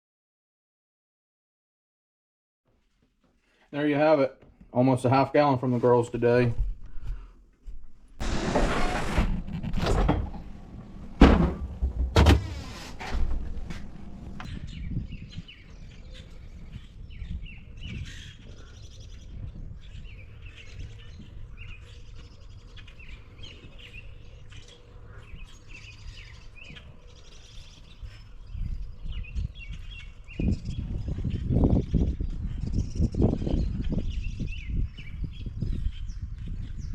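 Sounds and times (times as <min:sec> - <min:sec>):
loud knocks and thumps: 0:08.2 - 0:14.5
small birds chirping: 0:12.7 - 0:36.9.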